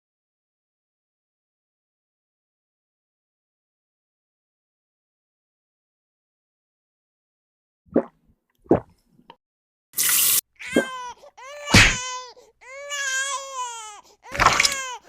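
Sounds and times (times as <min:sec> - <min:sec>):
high wavering crying wail: 0:10.6 - 0:15.0
short plops: 0:14.4 - 0:14.8.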